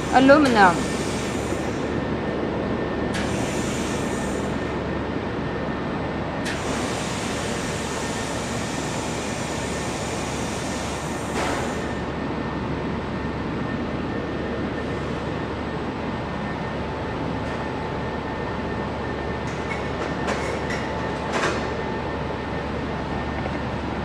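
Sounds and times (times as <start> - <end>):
laser welder hiss and hum: 0.0 - 1.9, 3.1 - 4.7, 6.4 - 12.0.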